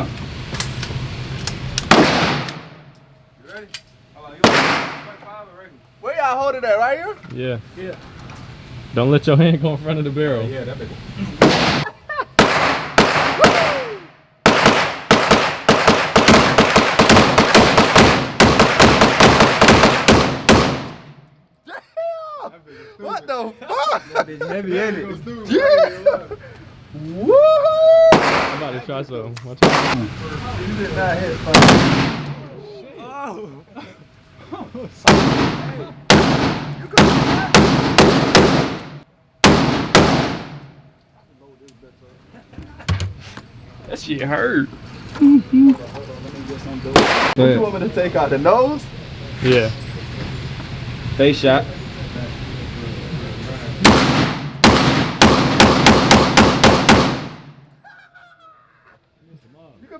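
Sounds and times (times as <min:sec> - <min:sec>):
gunshots with echo: 0:01.9 - 0:02.8, 0:04.4 - 0:05.2, 0:11.4 - 0:21.1, 0:28.1 - 0:28.7, 0:29.6 - 0:30.0, 0:31.5 - 0:32.4, 0:35.1 - 0:40.7, 0:47.0 - 0:47.4, 0:53.8 - 0:57.5.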